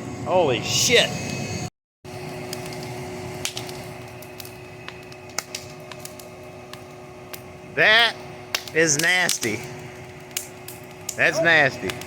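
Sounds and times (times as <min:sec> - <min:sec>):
fire rushing flames: 0:00.0 - 0:12.0
fire popping and crackling: 0:02.1 - 0:12.0.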